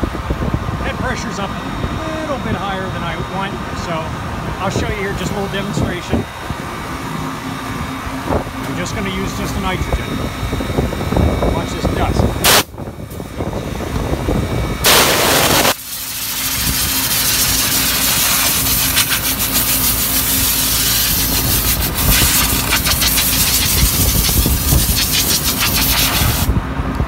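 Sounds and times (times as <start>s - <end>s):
steady low hum: 0.0s - 27.0s
compressed gas blowing from hose: 12.4s - 12.7s, 14.8s - 26.6s.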